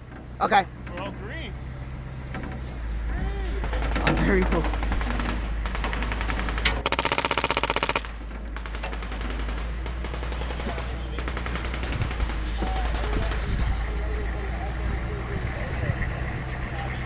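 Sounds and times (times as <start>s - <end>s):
vehicle engine droning: 0.0s - 17.0s
airsoft gun firing full auto: 4.8s - 13.1s.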